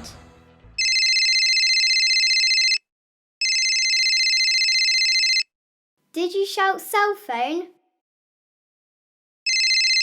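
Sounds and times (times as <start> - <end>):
cell phone ringing: 0.8 - 5.5, 9.5 - 10.0.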